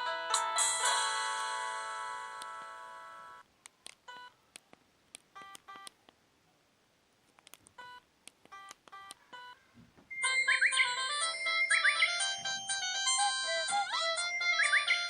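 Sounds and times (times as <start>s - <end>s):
phone key clicks: 7.4s - 9.2s.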